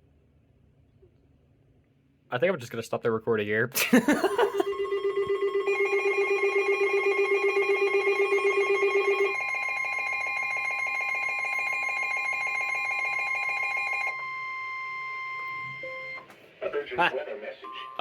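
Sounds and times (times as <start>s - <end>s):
steady alert tones: 4.3s - 14.1s
rapidly pulsing alarm beep: 4.6s - 16.2s, 17.7s - 18.0s.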